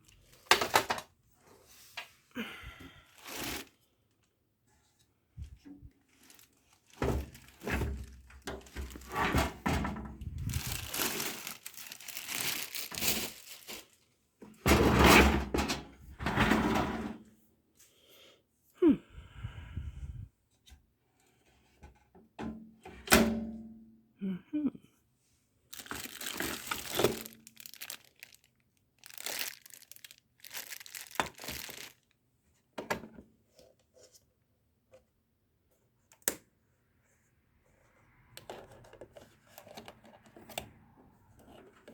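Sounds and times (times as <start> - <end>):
packing material crinkling and tearing: 3.2 - 3.8, 6.1 - 9.4, 10.4 - 14.0, 25.7 - 32.1.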